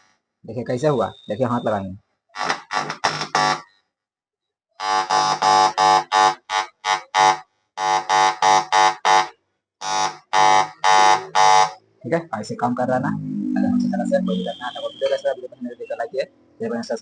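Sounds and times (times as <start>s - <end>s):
loudspeaker buzzing bursts: 4.8s - 11.8s, 13.0s - 15.3s.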